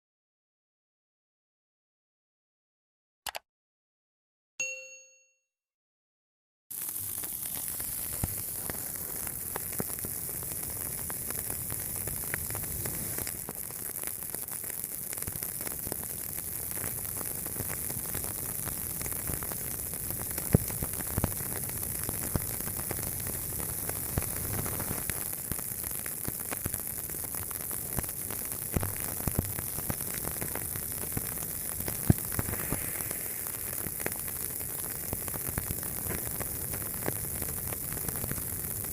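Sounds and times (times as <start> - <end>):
ringing chime: 4.6 - 5.4
fire crackling and popping: 6.7 - 38.9.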